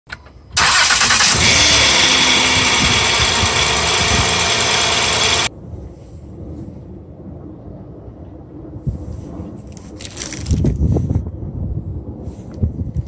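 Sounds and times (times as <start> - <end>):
car engine starting and running: 0.2 - 5.5.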